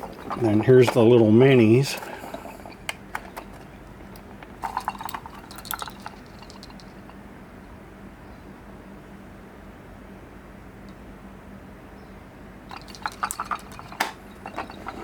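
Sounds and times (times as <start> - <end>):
faint steady hum: 0.0 - 15.0
screwdrivers clicking and rattling: 12.7 - 15.0.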